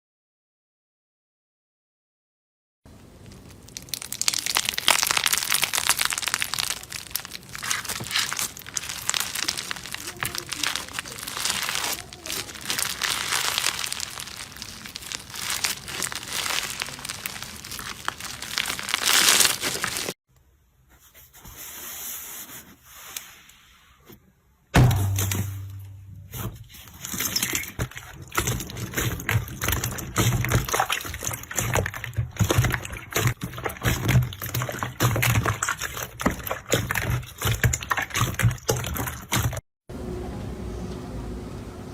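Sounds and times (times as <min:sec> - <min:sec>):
slime squishing and crackling: 0:03.0 - 0:20.2, 0:24.8 - 0:39.6.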